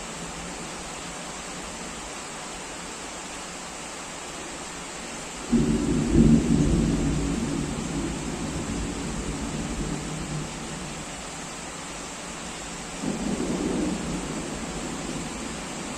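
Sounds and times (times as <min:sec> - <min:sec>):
heavy rain: 0:00.0 - 0:15.9
thunder clap and deep rumble: 0:05.5 - 0:11.2, 0:13.0 - 0:15.9.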